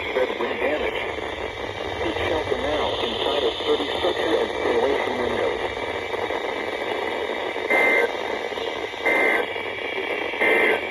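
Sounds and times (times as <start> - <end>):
radio hiss: 0.0 - 10.9.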